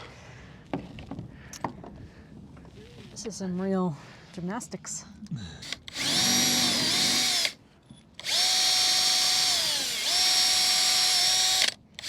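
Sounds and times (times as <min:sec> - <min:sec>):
power drill motor whine: 0:05.6 - 0:07.6, 0:08.2 - 0:11.8.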